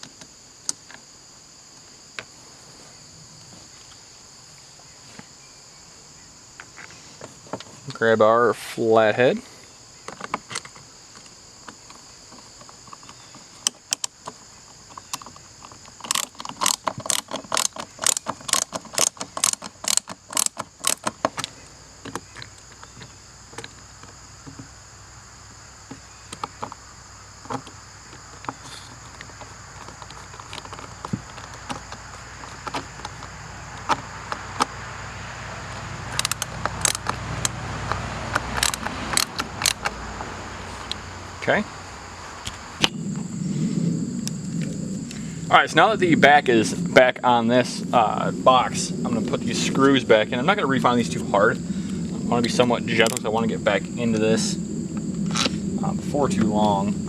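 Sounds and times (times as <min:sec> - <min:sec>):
screwdriver metallic clicks: 0:16.0 - 0:21.1, 0:36.1 - 0:37.5, 0:38.6 - 0:39.9.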